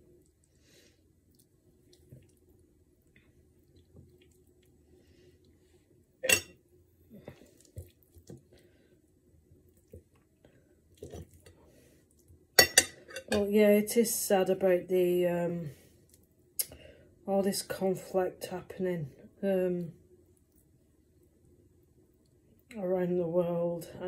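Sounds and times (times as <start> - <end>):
faint wet squelching: 0.0 - 6.5, 7.1 - 12.5.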